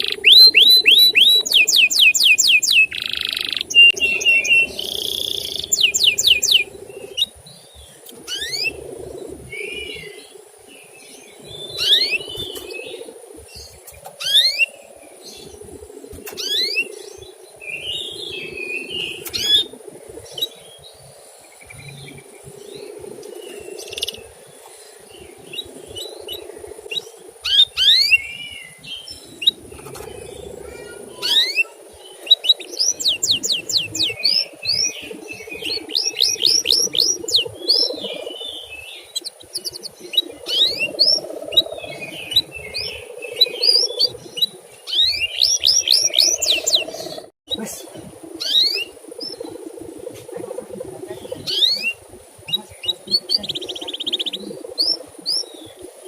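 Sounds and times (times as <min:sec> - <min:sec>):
canary chirping: 0:00.0 - 0:07.4, 0:26.3 - 0:47.3.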